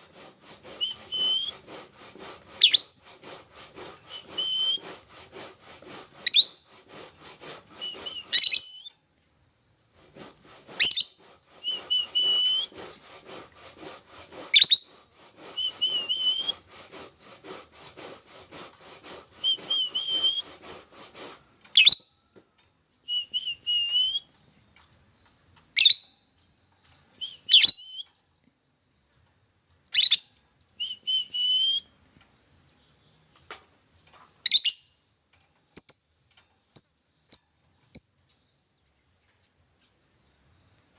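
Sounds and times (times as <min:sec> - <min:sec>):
dry rasping bird chatter: 0:00.0 - 0:09.0, 0:09.9 - 0:22.2, 0:29.9 - 0:40.5
short whistled bird notes: 0:07.8 - 0:09.0, 0:10.8 - 0:12.7, 0:19.4 - 0:20.5, 0:23.0 - 0:24.3, 0:27.2 - 0:28.3, 0:30.0 - 0:32.0
lovebird shrill chirps: 0:08.3 - 0:08.9, 0:27.4 - 0:28.0, 0:29.9 - 0:30.4, 0:34.4 - 0:35.0, 0:35.8 - 0:36.2.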